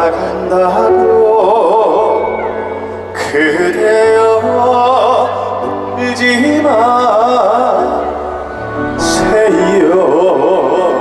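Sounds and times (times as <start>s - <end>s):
man singing slow ballad: 0.0s - 11.0s
band accompaniment: 6.2s - 10.9s.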